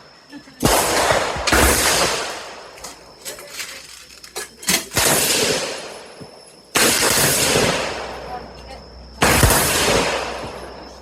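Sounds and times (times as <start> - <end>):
pistol shots echoing: 0.6 - 2.8, 4.8 - 8.2, 9.2 - 10.7.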